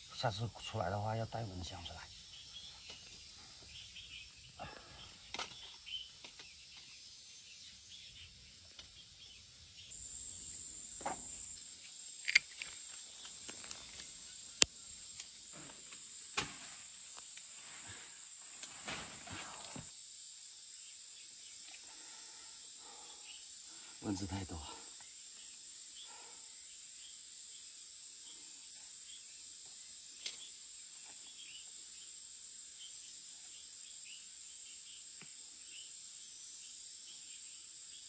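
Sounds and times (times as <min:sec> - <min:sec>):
insects chirring: 0:00.0 - 0:38.0
rustling leaves and vines: 0:02.6 - 0:07.1, 0:09.9 - 0:20.1.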